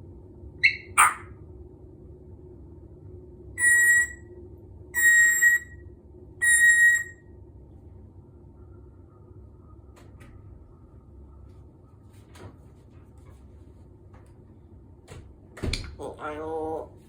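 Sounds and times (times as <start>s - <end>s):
parrot whistling: 0.6s - 1.3s, 3.6s - 4.3s, 5.0s - 5.8s, 6.4s - 7.2s.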